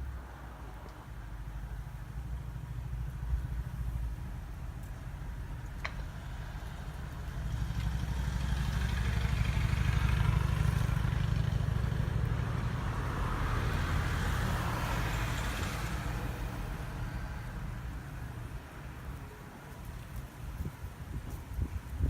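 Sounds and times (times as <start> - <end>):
low traffic rumble: 0.0 - 22.0
motor vehicle passing: 6.2 - 18.5.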